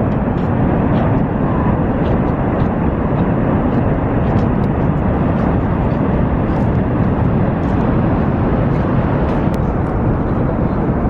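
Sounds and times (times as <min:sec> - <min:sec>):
waterfall rushing: 0:05.6 - 0:11.0.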